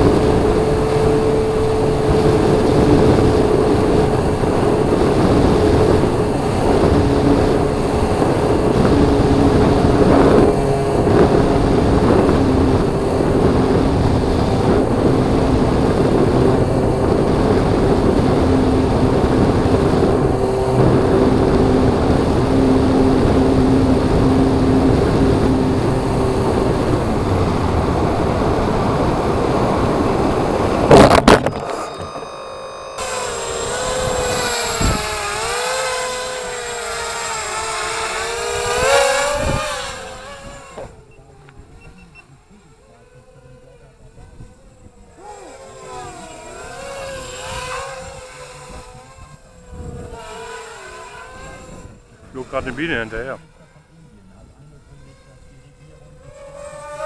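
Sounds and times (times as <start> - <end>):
wind rushing: 0.0 - 32.4
model aircraft motor whine: 0.0 - 57.0.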